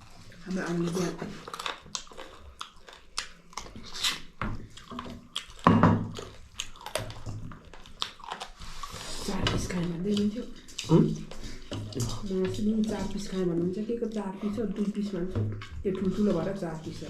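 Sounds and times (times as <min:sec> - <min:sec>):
wet chewing: 0:00.0 - 0:17.0
lip-smacking: 0:00.9 - 0:09.2.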